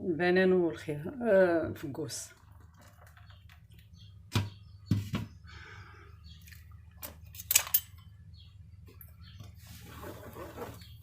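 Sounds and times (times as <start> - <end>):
kitchen items knocking and clattering: 2.4 - 5.4.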